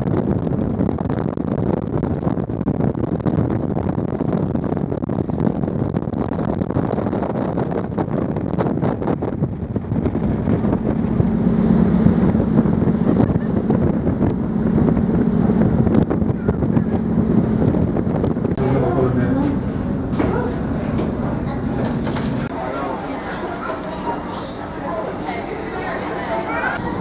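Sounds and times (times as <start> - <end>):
low hum: 0.0 - 25.9
wind buffeting microphone: 0.0 - 27.0
ferry engine drone: 6.1 - 27.0.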